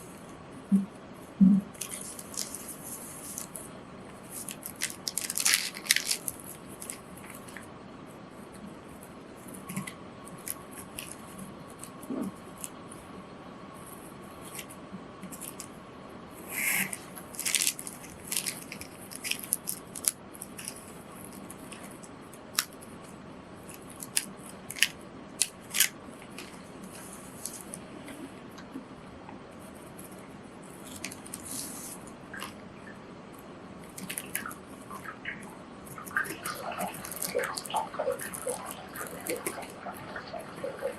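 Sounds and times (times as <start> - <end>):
paper rustling: 1.7 - 7.6, 16.7 - 22.0, 29.6 - 32.6
scissors snipping paper: 23.7 - 26.6.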